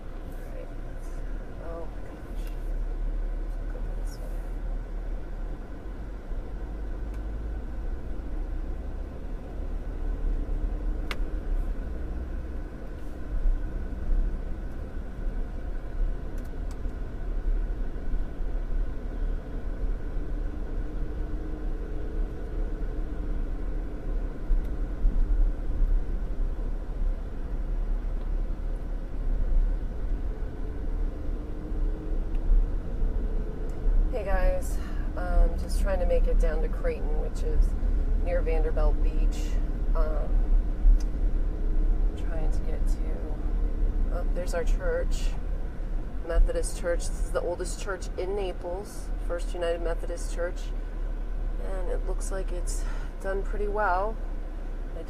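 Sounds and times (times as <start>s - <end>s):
car road and engine rumble: 0.0s - 55.0s
faint hum: 0.0s - 55.0s.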